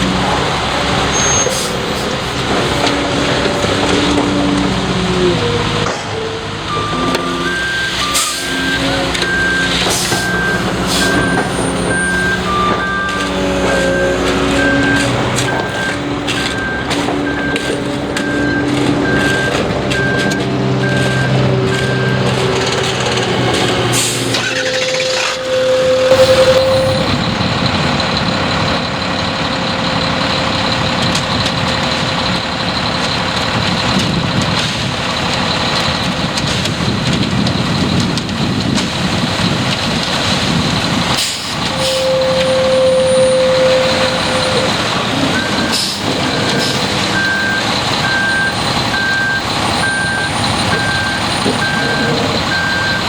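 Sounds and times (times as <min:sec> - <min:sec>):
diesel engine running: 0:00.0 - 0:53.0
reversing alarm beeping: 0:06.6 - 0:30.9, 0:41.7 - 0:53.0.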